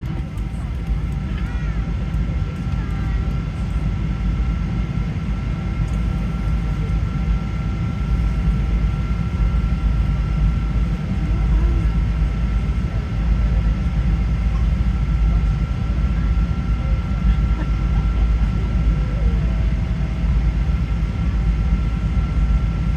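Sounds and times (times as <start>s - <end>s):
airliner low rumble: 0.0s - 22.9s.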